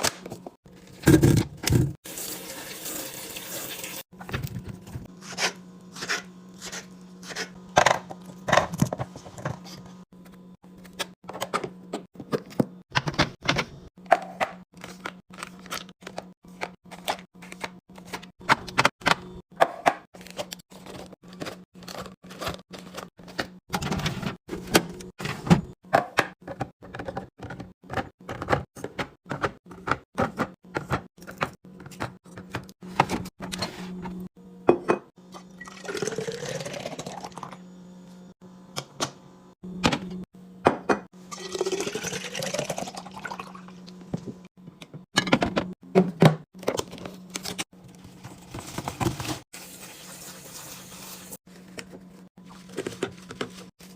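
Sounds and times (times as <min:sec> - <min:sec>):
liquid pouring into container: 0:35.6 - 0:37.5, 0:41.3 - 0:43.7.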